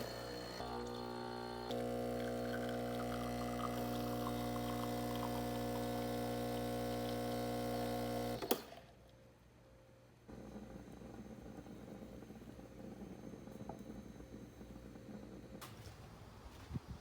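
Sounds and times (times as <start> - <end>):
electrical appliance humming: 0.0 - 9.1, 10.2 - 17.0.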